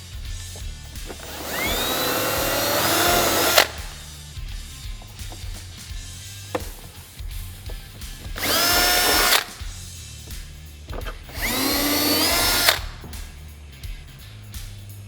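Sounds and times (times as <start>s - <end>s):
power drill boring through plastic: 0.9s - 4.1s, 8.1s - 9.8s, 10.9s - 13.1s.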